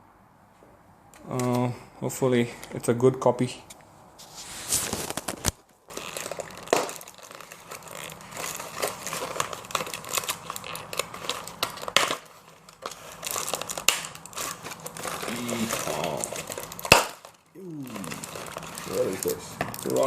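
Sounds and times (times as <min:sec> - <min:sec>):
packaging crinkling and rustling: 0:04.2 - 0:20.0.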